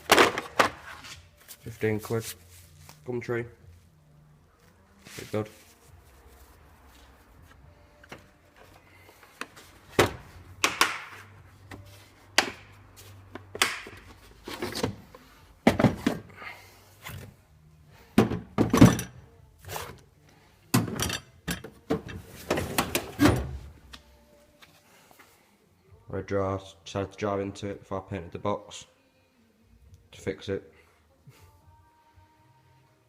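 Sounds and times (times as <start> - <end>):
tools shifting inside drawers: 11.1 - 17.4, 18.1 - 20.0, 20.7 - 23.8
metal drawers sliding and thudding shut: 18.2 - 19.9, 20.8 - 23.8.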